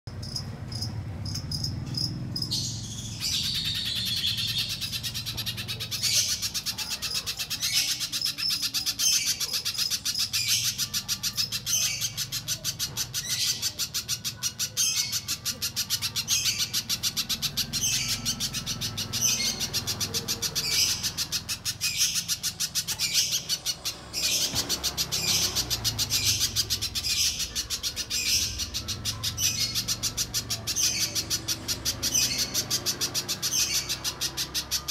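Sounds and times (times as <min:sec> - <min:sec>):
bird high sharp chirps: 0:00.1 - 0:34.9.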